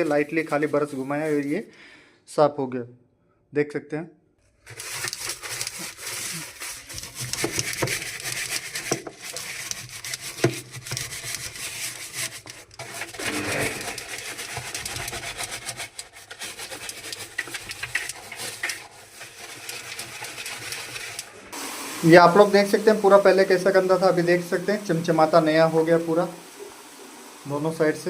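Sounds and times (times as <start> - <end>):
brush scrubbing: 0.0 - 1.6, 4.6 - 21.6.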